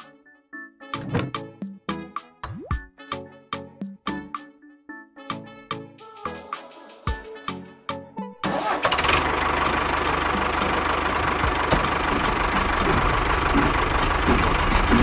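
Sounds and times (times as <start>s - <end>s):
motor running with rattle: 8.8s - 15.0s
plucked notes: 9.3s - 15.0s.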